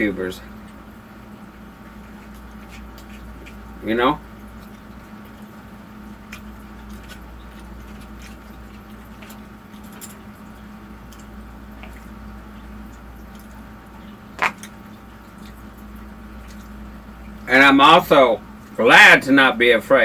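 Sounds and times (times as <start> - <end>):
wet mouth sounds eating: 14.4 - 14.8.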